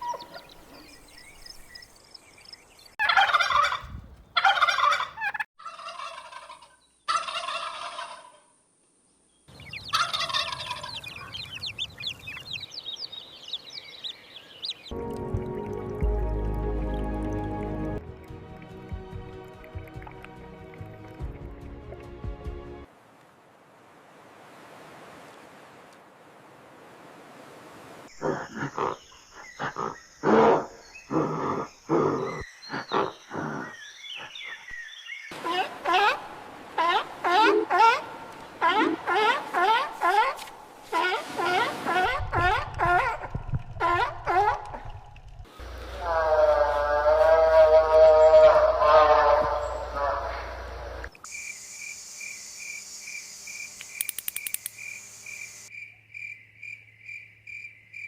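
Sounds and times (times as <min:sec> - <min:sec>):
animal calling: 0:35.4 - 0:44.9, 0:45.6 - 0:51.1
cricket chirping: 0:51.2 - 0:58.0
sharp clicks: 0:53.7 - 0:55.0.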